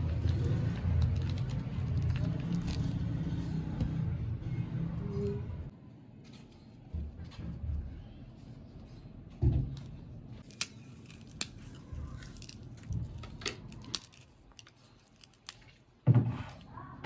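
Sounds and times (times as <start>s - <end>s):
utensils clicking and scraping: 10.4s - 15.8s.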